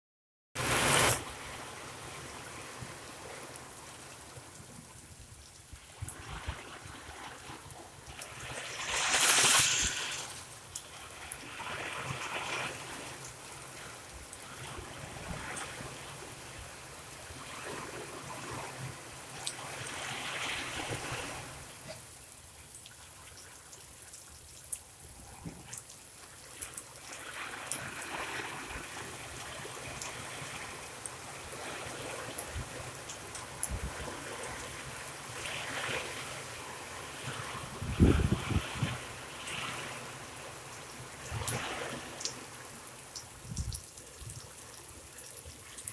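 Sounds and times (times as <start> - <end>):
steady rain falling: 0.6 - 45.9
water trickling and splashing: 0.6 - 45.9
brief loud rush of noise: 8.7 - 10.5
sharp water drips: 32.3 - 35.5, 40.6 - 45.9.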